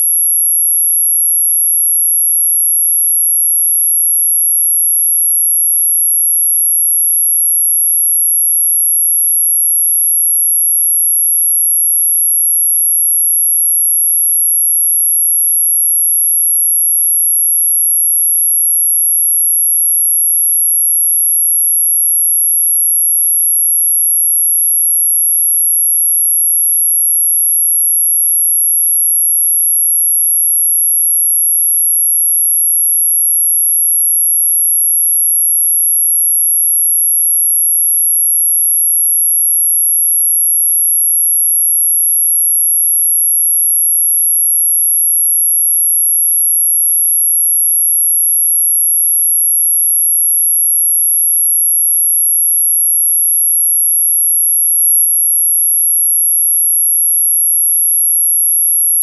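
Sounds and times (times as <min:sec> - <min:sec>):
high-pitched sine tone: 0:00.0 - 0:06.0.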